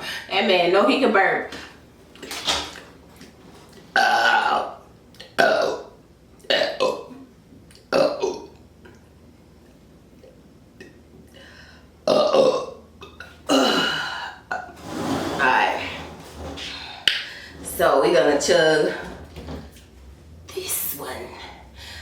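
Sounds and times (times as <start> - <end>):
woman belching: 4.0 - 7.3, 7.9 - 8.6, 12.0 - 14.8.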